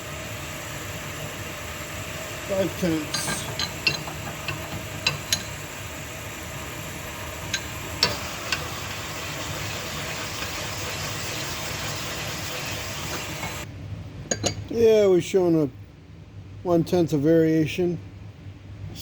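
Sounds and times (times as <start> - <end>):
machine motor humming and hissing: 0.0 - 13.7.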